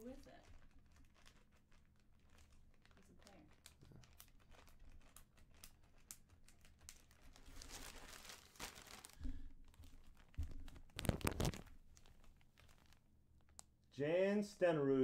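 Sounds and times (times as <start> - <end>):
plastic packaging crinkling: 0.0 - 13.8
rubs and knocks on packaging: 9.2 - 11.8.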